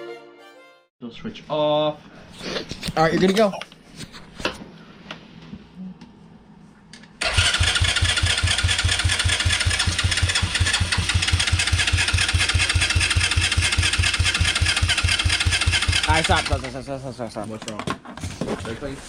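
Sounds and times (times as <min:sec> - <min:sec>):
engine starter cranking: 0:07.2 - 0:16.8.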